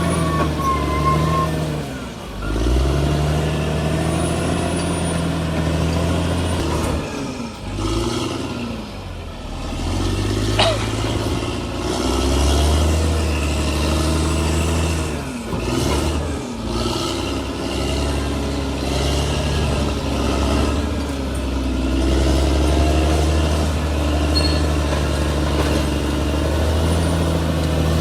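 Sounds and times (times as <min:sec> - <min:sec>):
high squeak falling in pitch: 0:00.0 - 0:01.7, 0:24.3 - 0:24.7
bulldozer diesel engine under load: 0:00.0 - 0:28.0.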